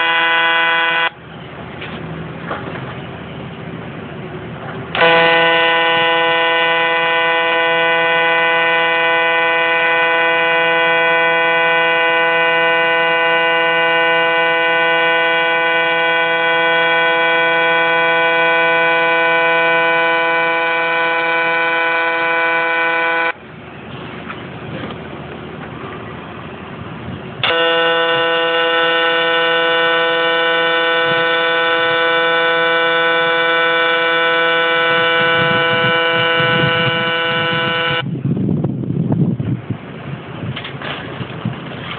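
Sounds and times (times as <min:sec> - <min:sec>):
welding arc buzzing: 0:05.0 - 0:23.4, 0:27.4 - 0:38.1.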